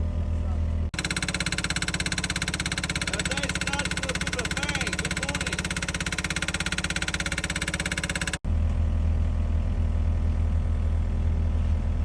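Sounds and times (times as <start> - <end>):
excavator diesel engine humming: 0.0 - 12.0
rapid hammering: 1.0 - 8.4.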